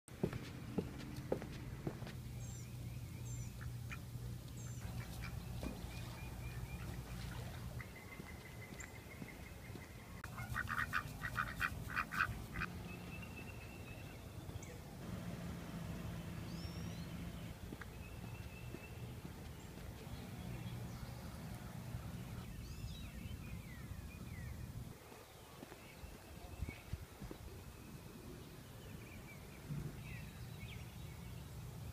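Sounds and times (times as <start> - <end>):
steady low hum: 0.1 - 24.9
small birds chirping: 2.0 - 14.9, 16.0 - 31.9
duck quacking: 10.2 - 12.7.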